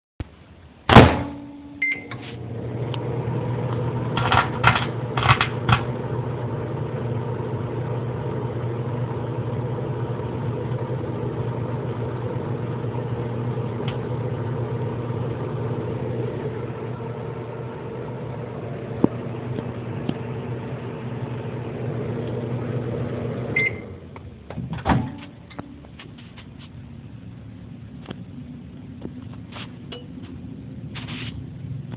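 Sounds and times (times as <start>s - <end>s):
microwave thump: 0.9s - 1.5s
microwave oven humming: 0.9s - 25.9s
microwave beep: 1.6s - 2.2s, 23.5s - 24.0s.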